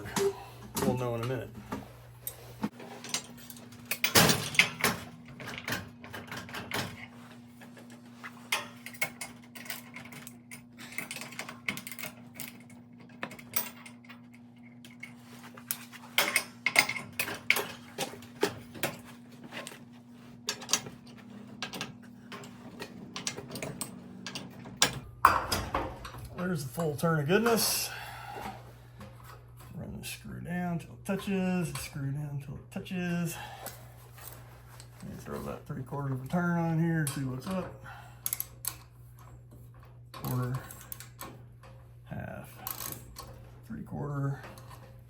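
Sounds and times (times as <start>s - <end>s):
steady low hum: 0.0s - 45.0s
metal clicks and clanks: 21.6s - 27.0s, 37.0s - 41.8s.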